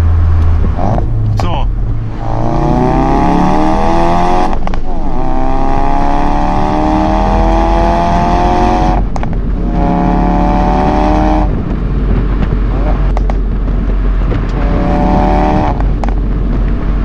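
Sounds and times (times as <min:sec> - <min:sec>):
car engine accelerating: 0:00.0 - 0:17.0.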